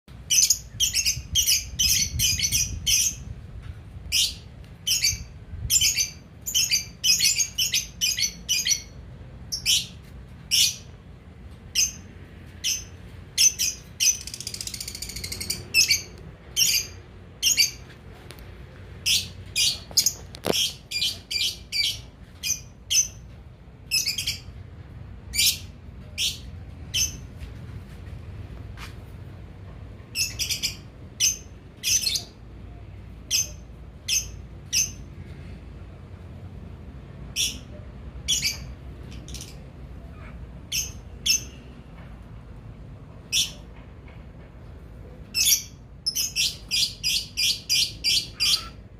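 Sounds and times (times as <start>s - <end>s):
bird chirping and chattering: 12.6s - 17.8s, 45.4s - 48.8s.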